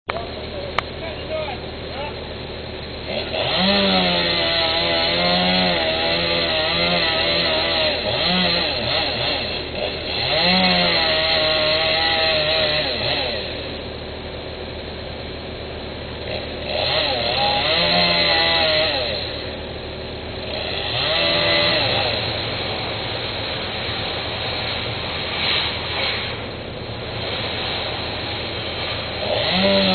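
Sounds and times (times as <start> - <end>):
chainsaw cutting wood: 2.0 - 29.9.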